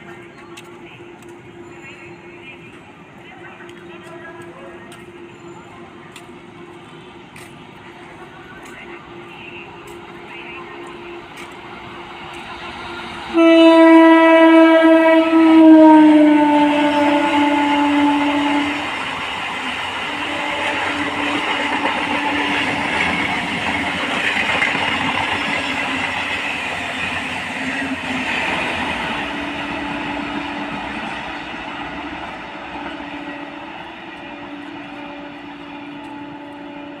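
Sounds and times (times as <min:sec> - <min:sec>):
train horn: 0:13.3 - 0:19.3, 0:20.0 - 0:23.3, 0:29.0 - 0:31.0, 0:32.7 - 0:37.0
train wheels clattering on rails: 0:20.7 - 0:29.9.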